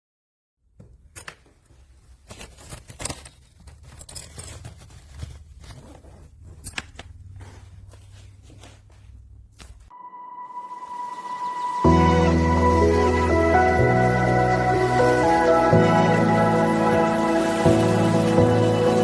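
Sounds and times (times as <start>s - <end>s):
suitcase handle rattling and scraping: 2.2s - 7.7s.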